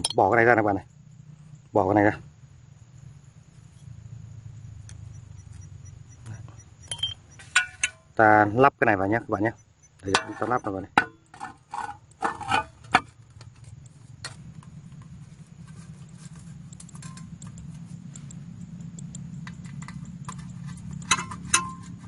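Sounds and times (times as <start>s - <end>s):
steady low hum: 0.0s - 22.0s
metal parts clicking and clinking: 6.9s - 8.1s, 10.0s - 13.8s, 15.8s - 17.9s, 19.1s - 22.0s.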